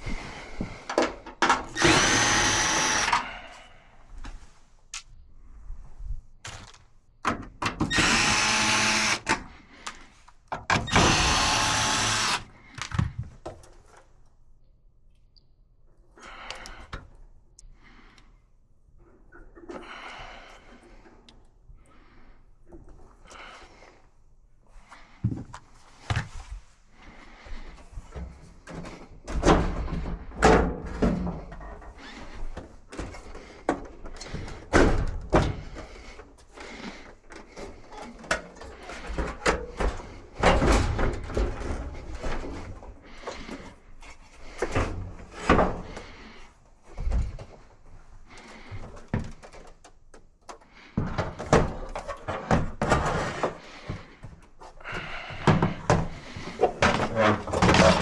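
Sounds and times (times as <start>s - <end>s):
knocks and clunks of parts: 0.0s - 3.3s, 6.4s - 14.2s, 28.0s - 43.8s, 48.4s - 58.0s.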